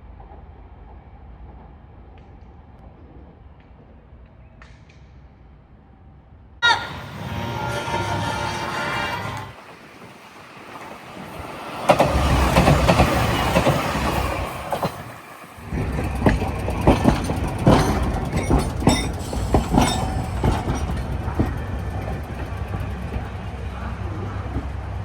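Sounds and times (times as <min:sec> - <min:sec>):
train wheel and track noise: 0:00.0 - 0:05.8, 0:06.4 - 0:25.0
wheels clacking over rail joints: 0:09.1 - 0:25.0.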